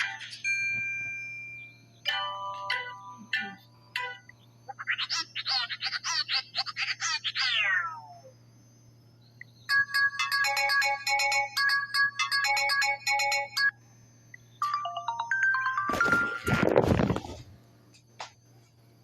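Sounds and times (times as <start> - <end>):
electronic ringtone melody: 9.7 - 13.8, 14.6 - 16.7.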